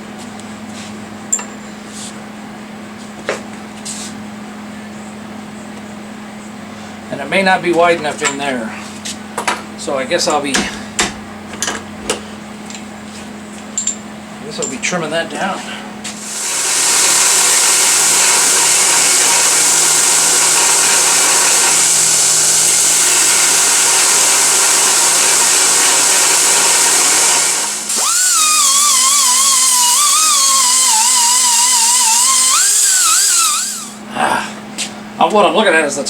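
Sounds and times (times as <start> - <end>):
power tool cutting plastic: 16.2 - 34.0.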